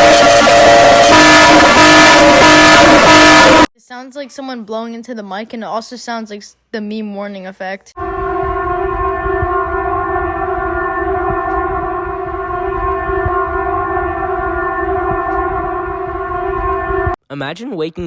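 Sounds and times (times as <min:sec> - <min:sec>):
buzzy alarm tone: 0:00.0 - 0:03.7, 0:08.0 - 0:17.2
rough rumble: 0:08.0 - 0:17.2.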